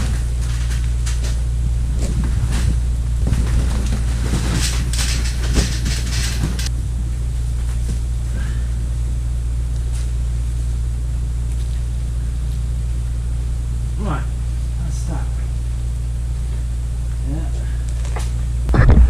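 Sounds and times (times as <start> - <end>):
steady low hum: 0.0 - 19.0
tools clattering: 2.0 - 6.7.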